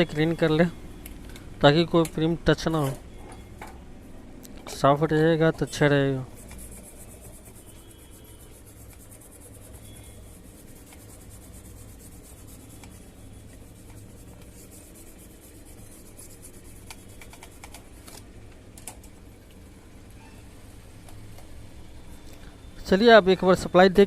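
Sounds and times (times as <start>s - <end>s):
rubbing and scratching circuit board: 5.0s - 18.3s.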